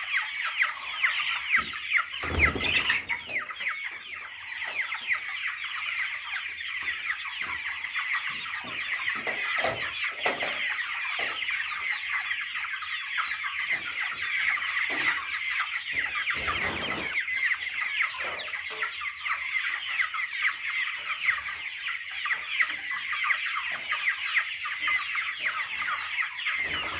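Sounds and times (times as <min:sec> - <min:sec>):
young chickens peeping and clucking: 0:00.0 - 0:26.9.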